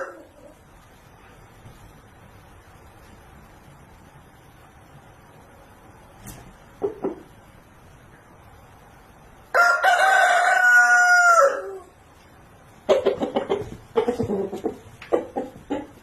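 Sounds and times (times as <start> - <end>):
rooster crowing: 0.0 - 0.5, 9.5 - 11.9
rapid clucks: 6.8 - 7.3, 12.8 - 16.0.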